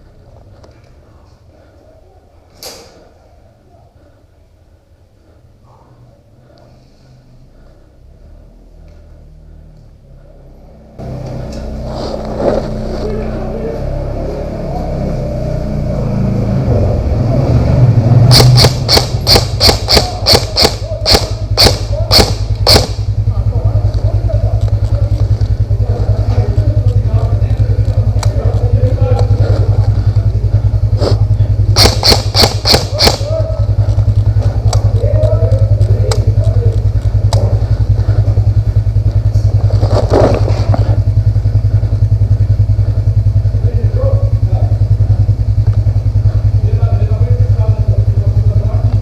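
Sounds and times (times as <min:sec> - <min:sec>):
vehicle engine running: 0:00.0 - 0:02.3, 0:02.9 - 0:49.0
airsoft gun shots: 0:18.3 - 0:23.1, 0:31.8 - 0:33.4.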